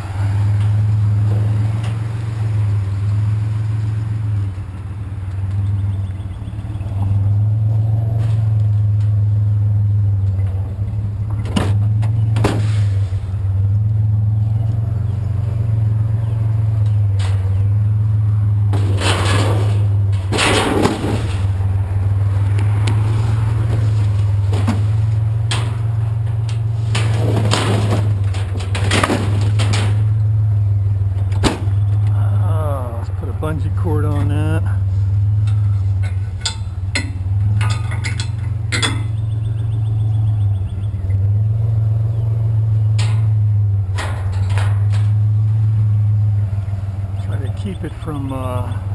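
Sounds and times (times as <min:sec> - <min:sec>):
truck engine idling: 0:00.0 - 0:48.9
scrap metal clanks and scrapes: 0:12.4 - 0:13.3, 0:18.7 - 0:21.6, 0:23.0 - 0:30.4, 0:34.9 - 0:39.2, 0:42.9 - 0:45.3.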